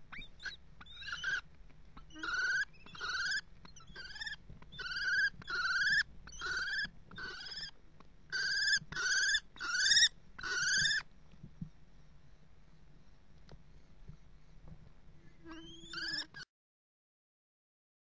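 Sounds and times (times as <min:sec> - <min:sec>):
kestrel calling: 0:00.1 - 0:11.0, 0:15.4 - 0:16.4.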